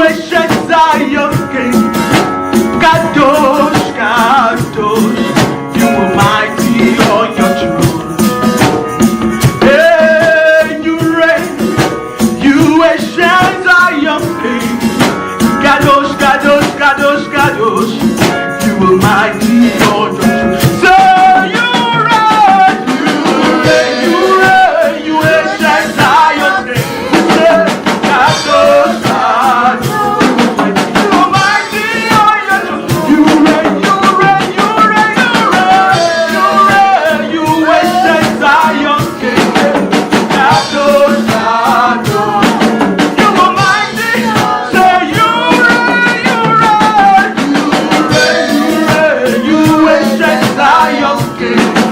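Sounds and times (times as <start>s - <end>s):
worship band playing: 0.0s - 51.9s
singing: 15.6s - 51.9s.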